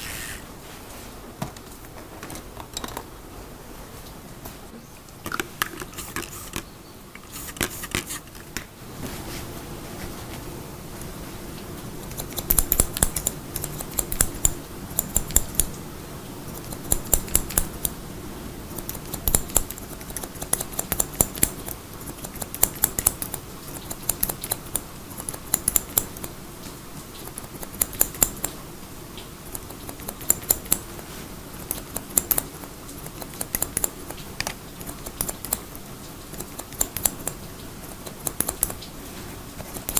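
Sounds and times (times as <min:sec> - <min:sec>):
steady background hiss: 0:00.0 - 0:39.9
scissors snipping hair: 0:12.0 - 0:15.8, 0:16.5 - 0:18.0, 0:18.7 - 0:26.4, 0:27.2 - 0:28.6, 0:29.5 - 0:30.9, 0:31.6 - 0:38.9, 0:39.6 - 0:39.9.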